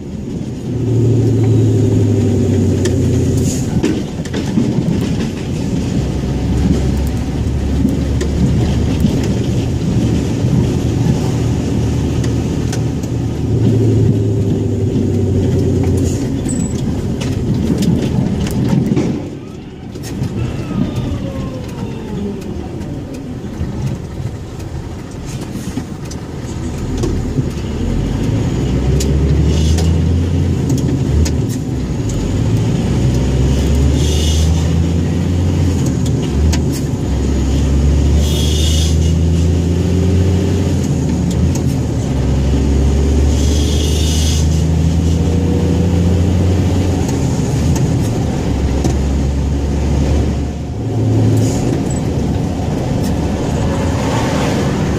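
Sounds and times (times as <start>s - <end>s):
truck diesel engine rumbling: 0.0s - 54.9s.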